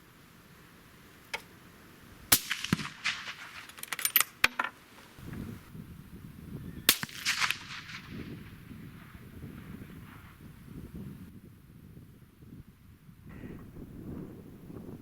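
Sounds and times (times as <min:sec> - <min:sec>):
rifle shots: 0:02.3 - 0:04.0, 0:06.9 - 0:08.4.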